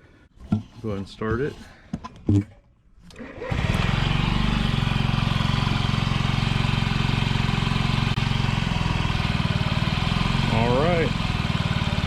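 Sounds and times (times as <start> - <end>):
scooter engine starting and idling: 3.1 - 12.0.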